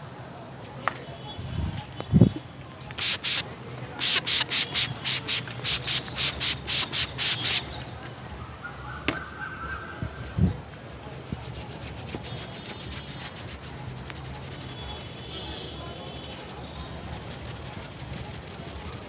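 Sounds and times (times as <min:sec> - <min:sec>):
hands rubbing skin: 0:03.0 - 0:03.4, 0:04.0 - 0:07.7, 0:11.2 - 0:19.0.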